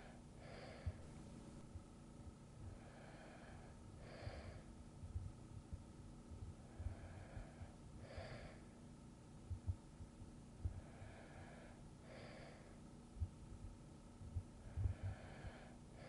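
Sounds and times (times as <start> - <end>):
person breathing softly: 0.0 - 1.2, 2.6 - 4.7, 6.6 - 8.8, 10.6 - 12.9, 14.6 - 16.0
faint low thumps: 9.4 - 10.9, 13.2 - 15.6.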